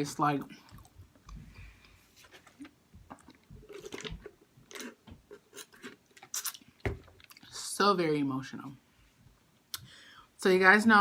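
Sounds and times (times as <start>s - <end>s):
person chewing: 0.6s - 7.5s.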